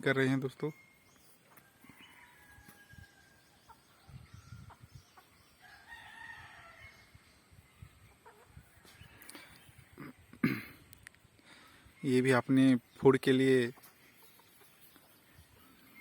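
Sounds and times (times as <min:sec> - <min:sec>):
faint rooster crowing: 0:01.5 - 0:04.4, 0:05.6 - 0:07.2
chickens clucking softly: 0:07.8 - 0:10.2.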